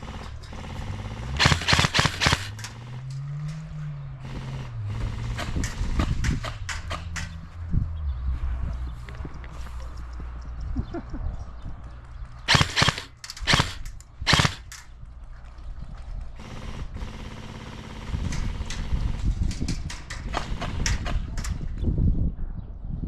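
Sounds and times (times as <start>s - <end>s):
airsoft gun shots: 0.0s - 2.9s, 12.5s - 14.8s.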